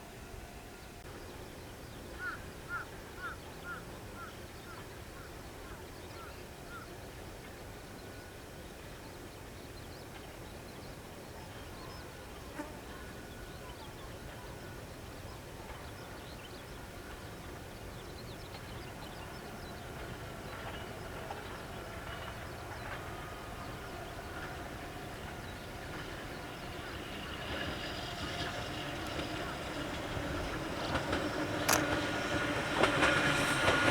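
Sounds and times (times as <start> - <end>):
faint steady whine: 0.0 - 32.3
electric train running: 14.2 - 33.9.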